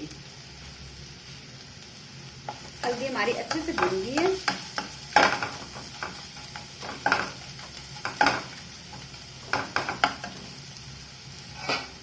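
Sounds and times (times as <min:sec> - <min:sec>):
turmeric sizzling in hot ghee: 0:00.0 - 0:12.0
metal spatula scraping a pan: 0:02.5 - 0:10.6, 0:11.4 - 0:12.0.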